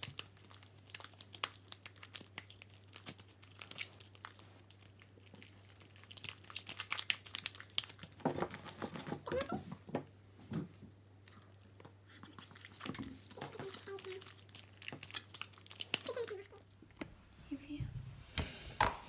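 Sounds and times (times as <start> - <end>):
slime crackling and popping: 0.0 - 9.6, 12.3 - 16.8.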